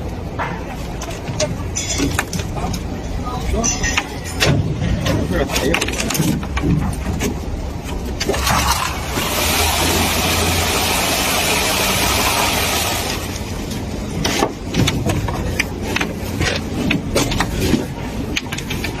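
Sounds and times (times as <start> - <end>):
metal knocks and clanks: 0.3 - 8.2.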